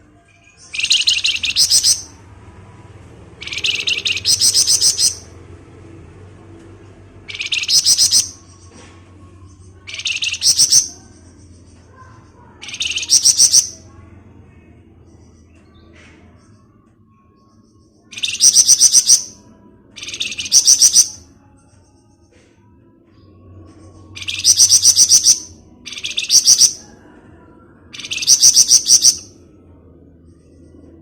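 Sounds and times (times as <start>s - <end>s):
songbird rattling trill: 0.7s - 2.1s, 3.4s - 5.2s, 7.3s - 8.3s, 9.9s - 10.9s, 12.6s - 13.8s, 18.2s - 19.3s, 24.2s - 26.8s, 28.0s - 29.2s.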